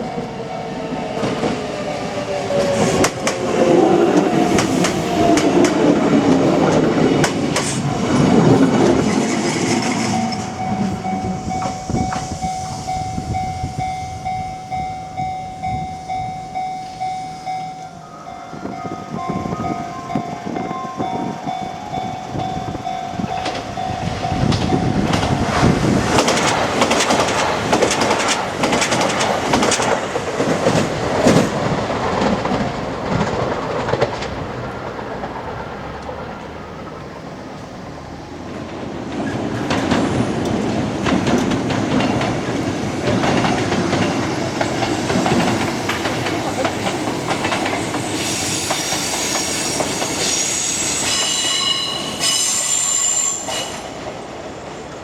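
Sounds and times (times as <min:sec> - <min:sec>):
train wheels clattering over joints: 0:00.0 - 0:13.4, 0:18.6 - 0:37.7, 0:38.5 - 0:54.2
level crossing warning tone: 0:00.0 - 0:26.6
high wheel squeal: 0:07.6 - 0:26.0, 0:45.1 - 0:54.0.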